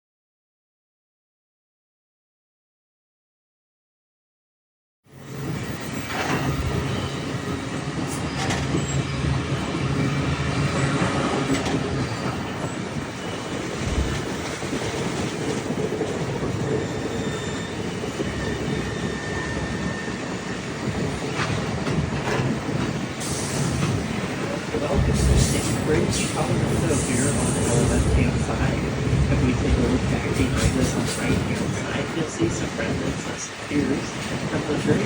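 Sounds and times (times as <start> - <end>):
faint high wheel squeal: 5.2 - 13.7, 16.6 - 20.7
train wheels rumbling and rattling: 5.4 - 35.0.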